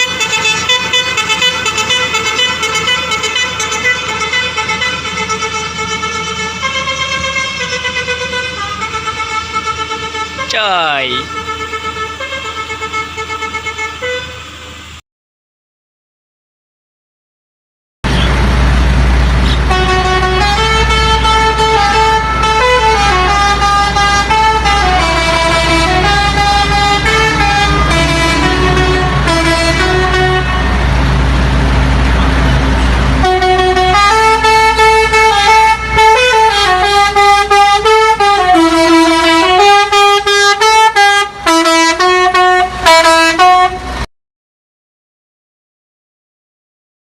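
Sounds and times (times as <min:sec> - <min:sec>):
musical air horn tune: 0:00.0 - 0:14.8, 0:19.5 - 0:30.9, 0:33.2 - 0:43.8
low engine rumble: 0:18.0 - 0:44.1.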